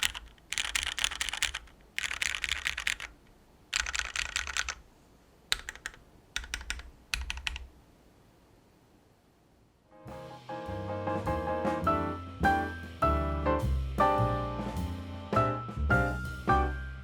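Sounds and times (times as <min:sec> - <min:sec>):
mechanical keyboard typing: 0:00.0 - 0:04.8, 0:05.5 - 0:07.7.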